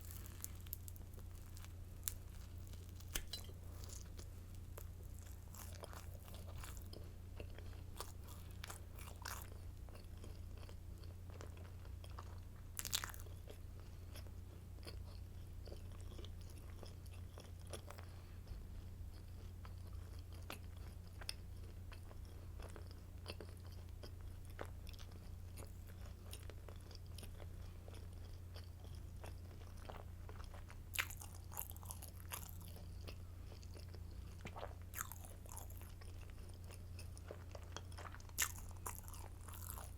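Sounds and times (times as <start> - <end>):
crunchy bite: 0.0 - 7.0, 8.0 - 9.5, 12.8 - 13.3, 30.9 - 32.8, 34.5 - 35.9, 38.0 - 39.9
chewing crunchy bread: 0.0 - 39.9.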